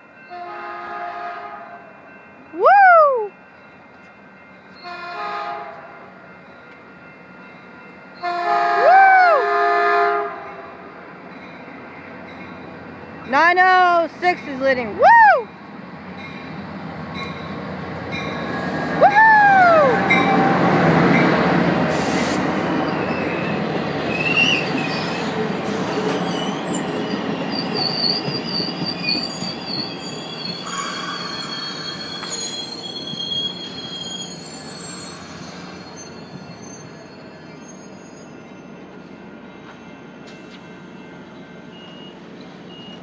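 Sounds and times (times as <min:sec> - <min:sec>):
rumble of train wheels on rail: 0:09.6 - 0:32.5
steel wheels squealing: 0:21.9 - 0:39.0.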